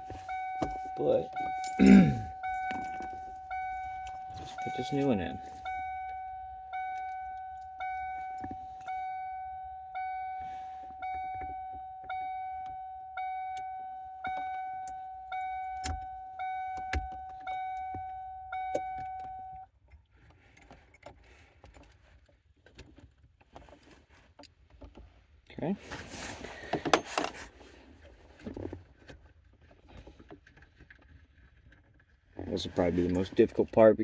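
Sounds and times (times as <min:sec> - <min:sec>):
dashboard warning chime: 0:00.0 - 0:19.7
keys and parts clicking: 0:00.1 - 0:08.9, 0:11.2 - 0:19.6.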